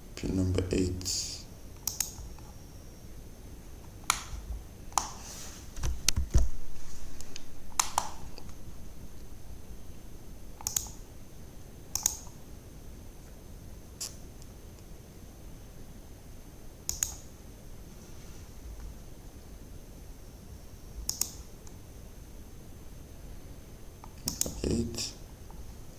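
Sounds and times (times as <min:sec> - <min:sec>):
faint high whine: 0:00.0 - 0:25.9
computer mouse clicks: 0:01.8 - 0:02.5, 0:04.9 - 0:05.2, 0:07.3 - 0:08.6, 0:10.6 - 0:11.0, 0:11.9 - 0:12.4, 0:16.9 - 0:17.3, 0:21.0 - 0:21.8, 0:24.0 - 0:24.6.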